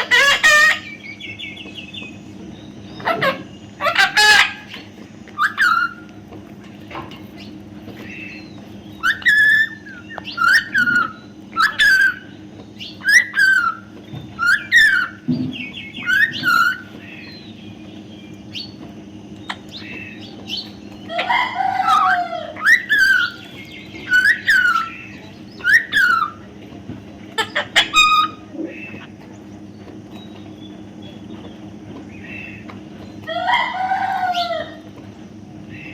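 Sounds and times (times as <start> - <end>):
parrot shrill calls: 0.0 - 1.0, 3.0 - 6.1, 9.0 - 12.3, 13.0 - 15.2, 16.0 - 16.9, 21.1 - 26.4, 27.4 - 29.1, 33.3 - 34.8.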